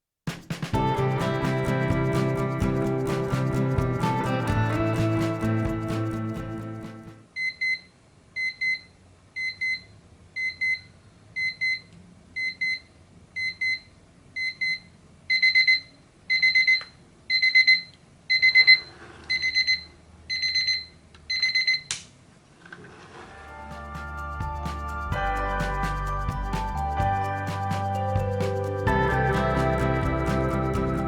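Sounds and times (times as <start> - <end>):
alarm clock beeping: 14.4 - 21.8.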